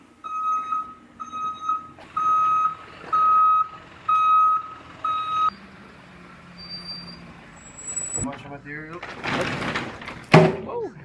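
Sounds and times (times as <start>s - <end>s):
reversing alarm beeping: 0.0s - 5.7s.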